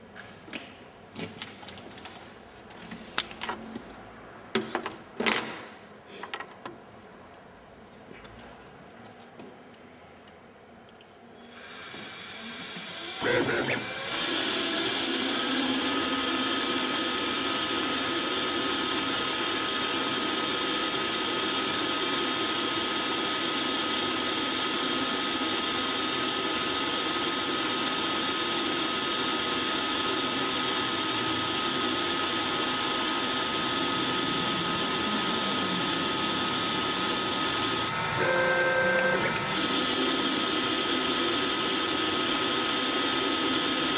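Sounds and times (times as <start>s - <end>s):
lathe running: 11.5s - 43.9s
thin steady whine: 30.6s - 40.8s.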